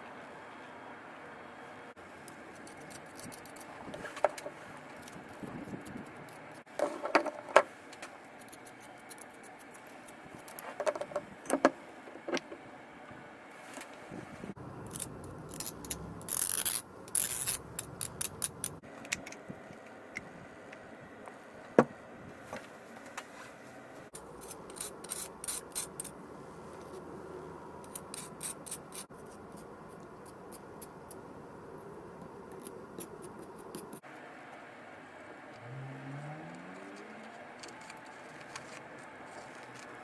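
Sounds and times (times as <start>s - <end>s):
small tools clicking and clinking: 2.3s - 3.7s, 14.8s - 19.4s.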